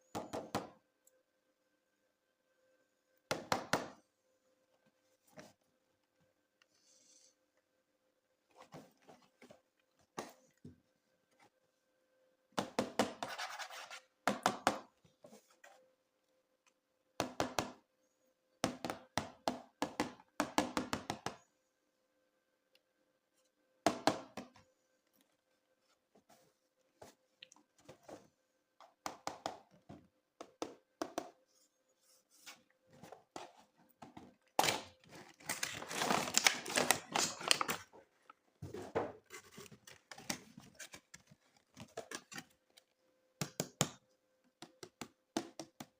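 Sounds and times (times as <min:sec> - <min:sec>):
toy packaging crinkling and clicking: 0:34.6 - 0:38.3.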